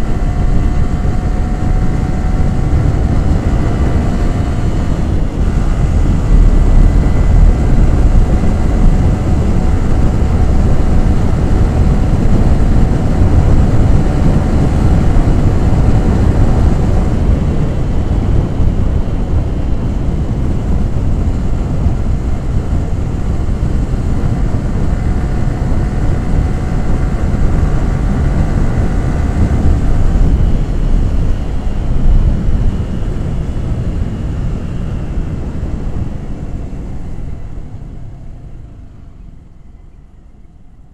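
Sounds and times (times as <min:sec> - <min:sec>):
motorcycle engine running: 0:00.0 - 0:40.9
wind and road noise: 0:00.0 - 0:40.9.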